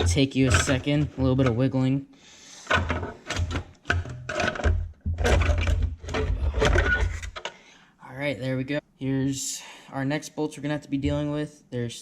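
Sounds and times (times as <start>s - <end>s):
sheet metal scraping and knocking: 0.0s - 1.6s, 2.7s - 7.5s.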